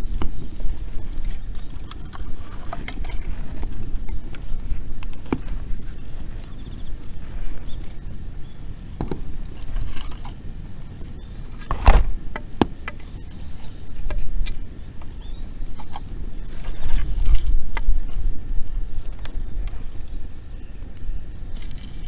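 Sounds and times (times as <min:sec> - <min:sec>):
steady low rumble: 0:00.0 - 0:22.0
wood fire crackling: 0:00.0 - 0:22.0
sharp pops of fire: 0:02.7 - 0:13.3.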